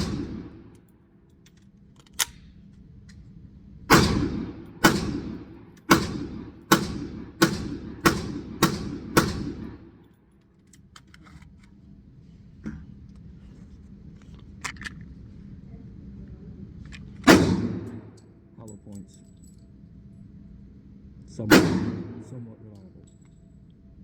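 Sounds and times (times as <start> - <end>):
pistol shots: 0.0 - 0.8, 3.9 - 10.0, 17.2 - 18.2, 21.5 - 22.3.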